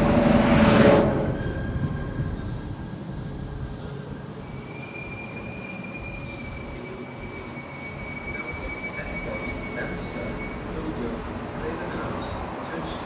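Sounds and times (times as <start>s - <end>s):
train rumbling on track: 0.0s - 13.0s
train wheels squealing: 0.7s - 3.0s, 3.9s - 11.0s.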